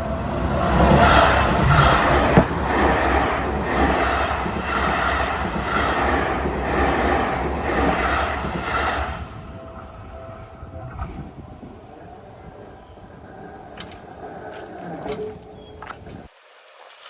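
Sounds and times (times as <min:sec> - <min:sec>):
crossing warning bell ringing: 0:00.0 - 0:15.9
train wheels clattering on rails: 0:00.0 - 0:16.3.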